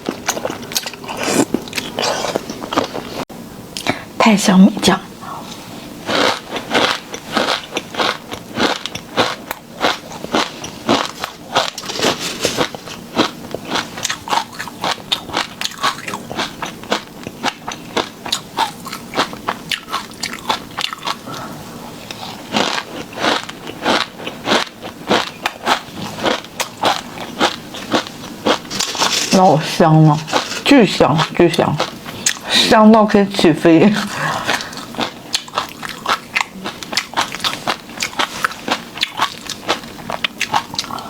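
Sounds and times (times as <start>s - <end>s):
crunchy bites and wet chewing: 6.1s - 21.4s, 22.0s - 29.4s, 34.0s - 41.0s.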